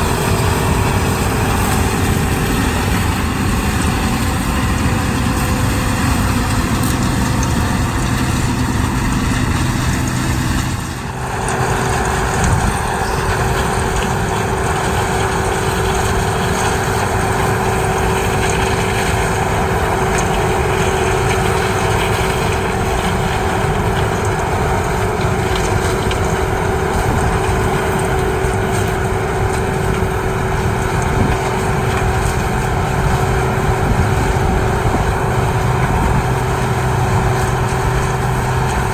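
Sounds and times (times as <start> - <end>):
combine harvester running: 0.0 - 38.9
machine whine: 0.0 - 38.9.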